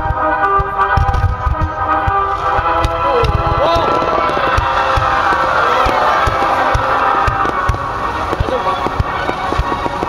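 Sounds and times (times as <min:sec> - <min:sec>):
fireworks bangs: 0:00.0 - 0:10.0
fireworks crackling: 0:00.0 - 0:10.0.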